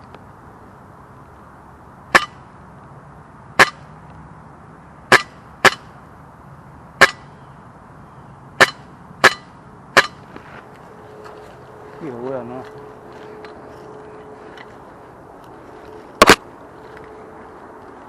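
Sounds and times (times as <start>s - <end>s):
airsoft rifle shots: 16.2s - 16.4s.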